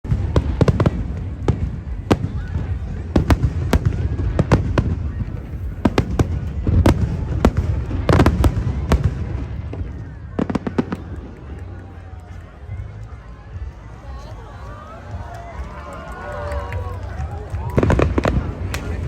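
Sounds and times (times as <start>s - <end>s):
fireworks bangs: 0.0s - 12.1s, 17.2s - 19.0s.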